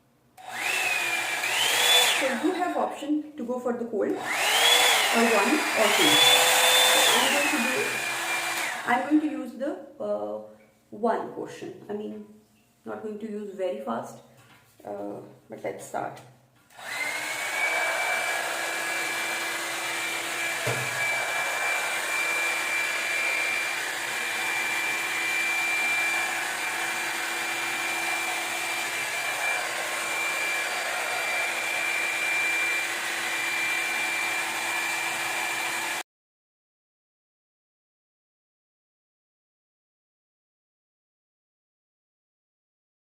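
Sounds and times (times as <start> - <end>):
hair dryer brush running: 0.4 - 2.9, 4.1 - 9.3, 16.7 - 36.0.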